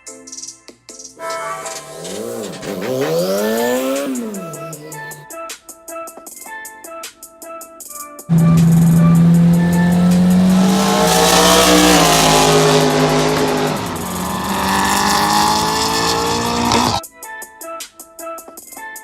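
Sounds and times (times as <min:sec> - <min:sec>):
car engine revving: 0:01.5 - 0:05.2, 0:08.3 - 0:17.0.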